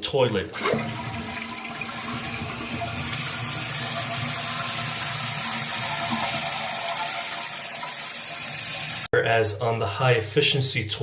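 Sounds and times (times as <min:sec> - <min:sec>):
toilet flushing: 0:00.5 - 0:09.1.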